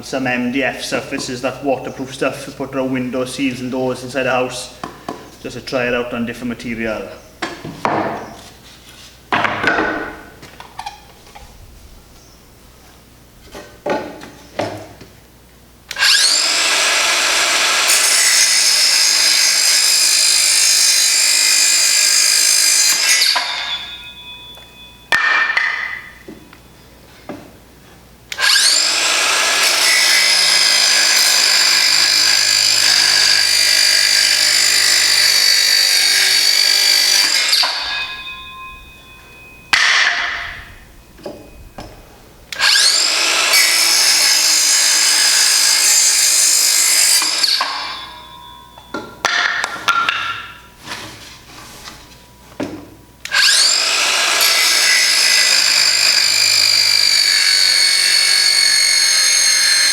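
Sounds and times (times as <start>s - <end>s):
knocks: 7.4s - 8.3s
circular saw cutting wood: 15.9s - 24.1s, 28.3s - 40.5s, 42.5s - 48.6s, 53.2s - 59.9s.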